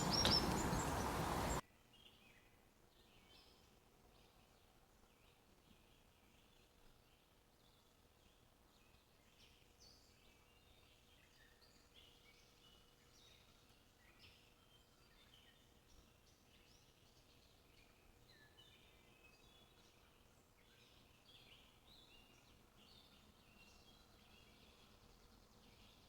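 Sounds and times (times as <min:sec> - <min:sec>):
faint bird chirps: 0:00.0 - 0:02.4
low steady hiss: 0:00.0 - 0:26.0.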